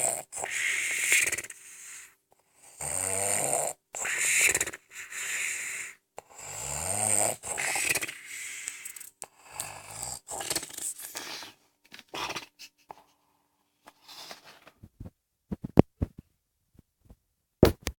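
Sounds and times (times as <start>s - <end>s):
person snoring: 0.0s - 12.5s.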